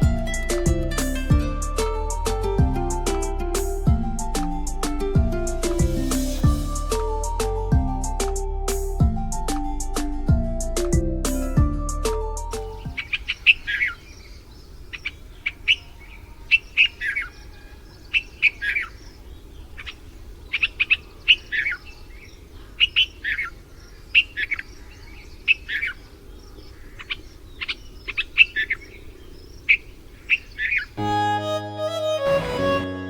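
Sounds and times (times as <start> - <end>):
bulbul calling: 12.5 - 31.0
faint low background noise: 12.6 - 32.8.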